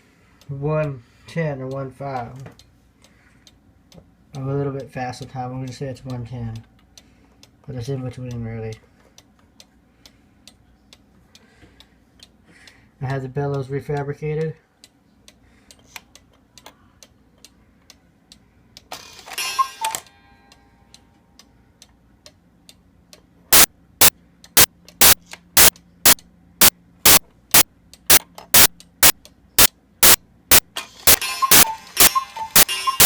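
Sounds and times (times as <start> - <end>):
clock ticking: 23.6 - 26.2, 27.1 - 33.0.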